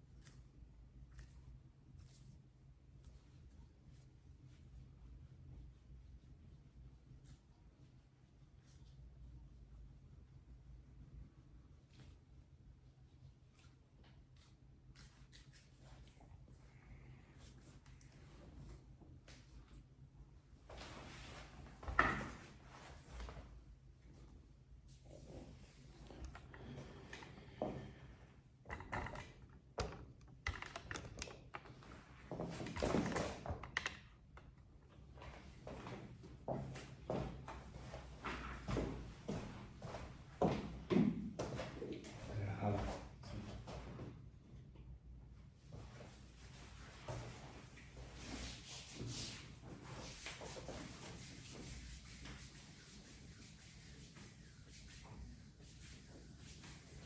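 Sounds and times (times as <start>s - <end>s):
rustling rub: 46.5s - 57.0s.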